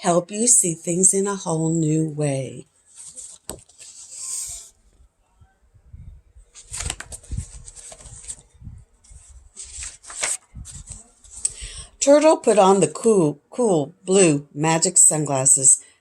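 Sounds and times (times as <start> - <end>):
book pages rustling: 2.8 - 5.0, 6.5 - 11.6.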